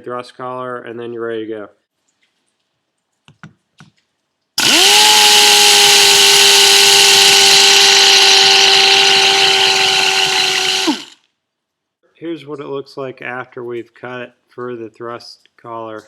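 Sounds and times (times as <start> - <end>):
power tool whining: 4.6 - 11.2.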